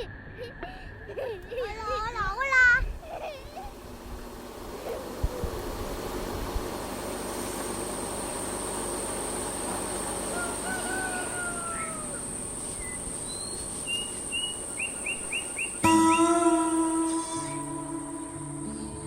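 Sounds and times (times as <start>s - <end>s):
insect drone: 0.0s - 19.0s
bird chirps: 11.7s - 19.0s
bird whistled calls: 12.8s - 17.7s.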